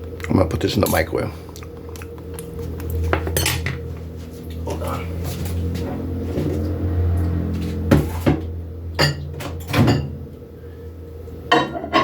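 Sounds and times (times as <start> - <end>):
low appliance hum: 0.0 - 12.0
microwave door and dish clunks: 9.0 - 10.2.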